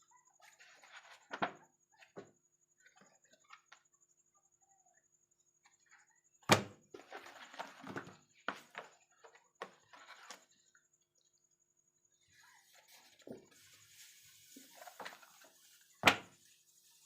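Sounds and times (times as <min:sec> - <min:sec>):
books and paper handled: 0:00.4 - 0:03.8, 0:06.9 - 0:10.7, 0:12.3 - 0:17.0.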